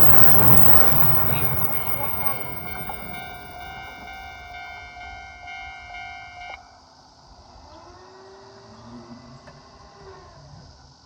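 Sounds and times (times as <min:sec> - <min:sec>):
level-crossing warning bell: 0:00.0 - 0:06.6.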